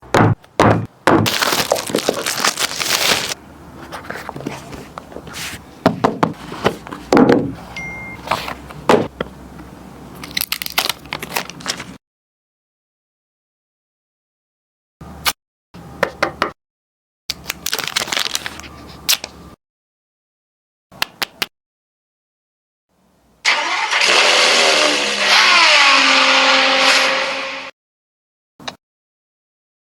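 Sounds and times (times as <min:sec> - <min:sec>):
taps and knocks: 0:00.0 - 0:01.3
packaging rustling: 0:01.2 - 0:05.6, 0:06.3 - 0:07.2, 0:10.2 - 0:12.0, 0:17.5 - 0:18.8
short high beep: 0:07.8 - 0:08.2
car engine starting and revving: 0:23.5 - 0:27.7.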